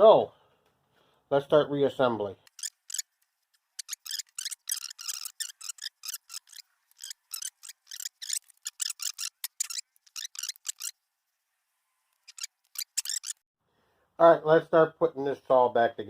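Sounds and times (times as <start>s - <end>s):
small metal parts clicking: 2.5s - 10.9s, 12.2s - 13.4s.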